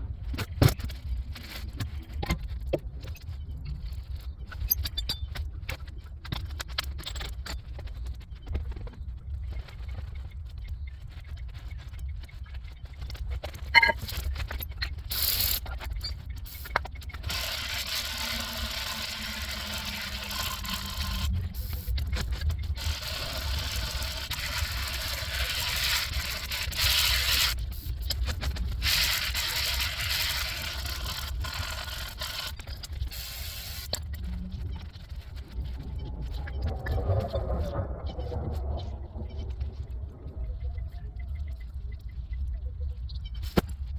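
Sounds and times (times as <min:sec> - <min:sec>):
mechanical scraping: 0:12.8 - 0:41.7
steady low rumble: 0:32.8 - 0:43.9.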